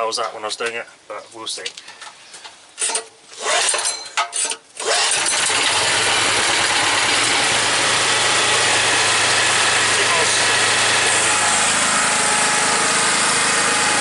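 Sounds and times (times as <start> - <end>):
petrol generator starting and running: 4.8 - 14.0.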